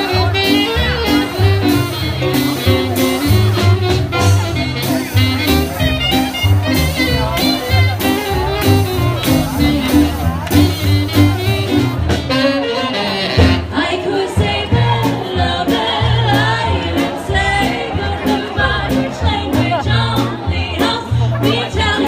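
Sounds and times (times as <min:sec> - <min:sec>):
swing band playing: 0:00.0 - 0:22.0
drum strikes: 0:01.4 - 0:12.5.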